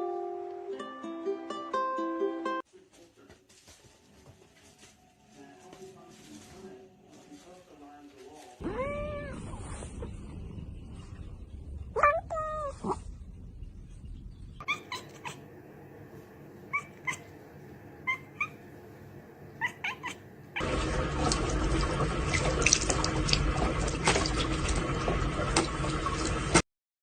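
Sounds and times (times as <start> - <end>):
cat chirping mews: 8.6 - 10.2, 11.9 - 13.0, 14.6 - 15.5, 16.6 - 17.4, 18.0 - 18.6, 19.6 - 20.3
steady rushing noise: 9.0 - 14.6.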